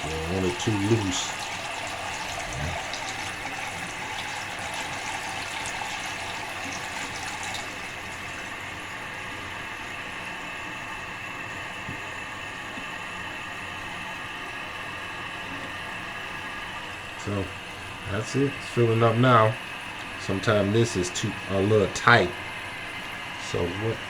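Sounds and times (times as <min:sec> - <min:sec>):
toilet tank refilling: 0:00.0 - 0:11.9.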